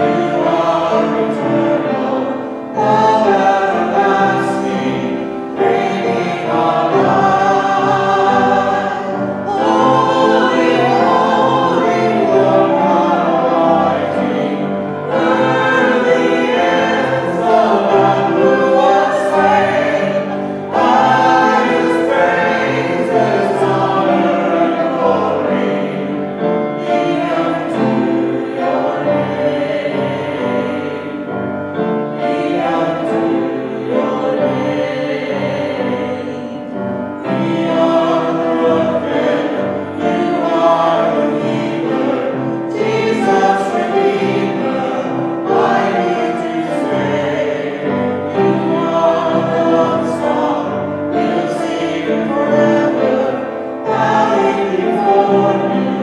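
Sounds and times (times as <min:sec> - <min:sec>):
group singing worship song: 0:00.0 - 0:56.0
instrumental accompaniment: 0:00.0 - 0:56.0.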